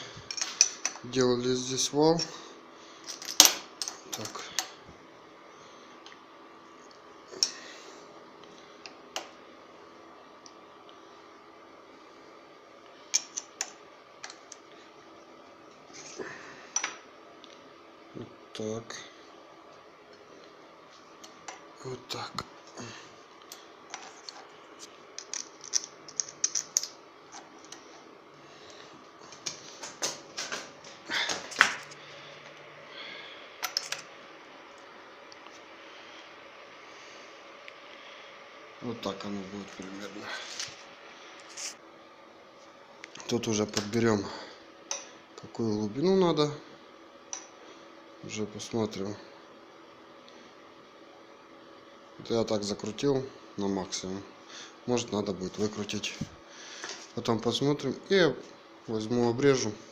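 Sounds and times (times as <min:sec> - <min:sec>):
faint steady hum: 0:00.0 - 0:59.9
small metal parts clicking: 0:25.2 - 0:27.0.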